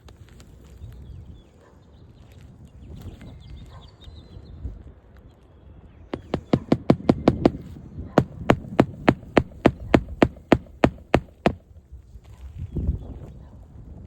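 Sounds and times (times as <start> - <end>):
hammer striking roofing nails: 6.2 - 11.6.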